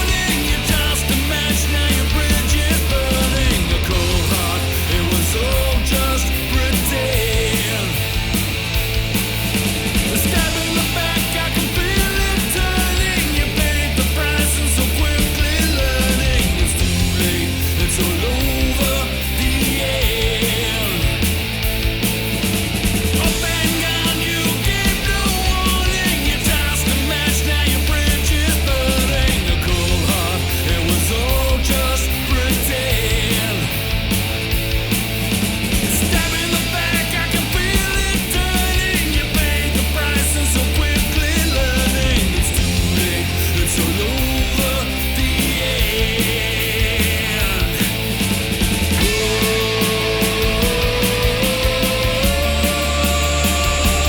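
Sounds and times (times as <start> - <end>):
bass: 0.0 - 54.0
distorted electric guitars: 0.0 - 54.0
drums: 0.0 - 54.0.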